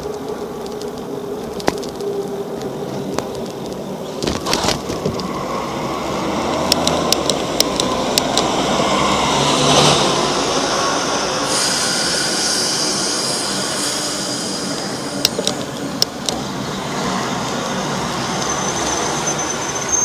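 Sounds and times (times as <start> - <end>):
bicycle wheels whirring: 0.0 - 20.0
sharp ticks: 6.5 - 8.5.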